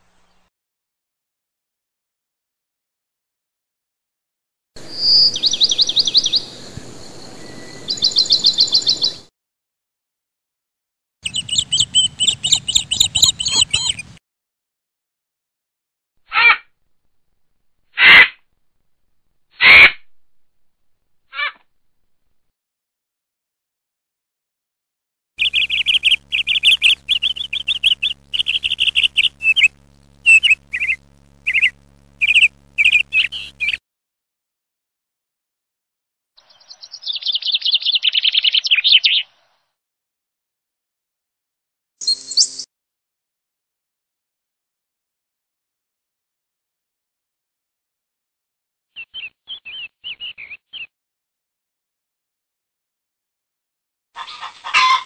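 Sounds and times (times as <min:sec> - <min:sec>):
birds twittering: 0:04.8 - 0:09.3, 0:11.2 - 0:14.2, 0:25.4 - 0:33.8, 0:36.4 - 0:39.3, 0:42.0 - 0:42.7, 0:49.0 - 0:50.9
high bird chirps: 0:04.9 - 0:06.6, 0:07.2 - 0:09.3, 0:11.2 - 0:14.2, 0:25.4 - 0:33.8, 0:36.4 - 0:39.3, 0:42.0 - 0:42.7, 0:49.0 - 0:50.9
faint steady hum: 0:25.4 - 0:33.8.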